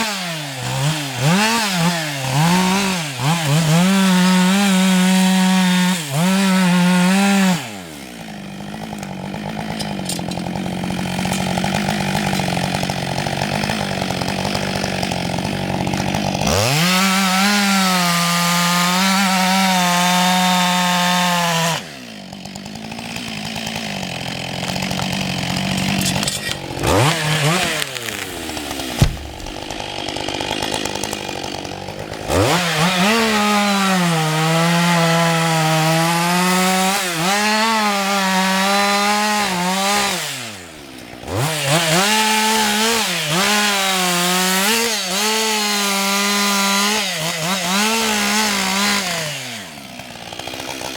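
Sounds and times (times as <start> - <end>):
chainsaw revving and idling: 0.0 - 50.9
sharp knock: 29.0 - 29.8.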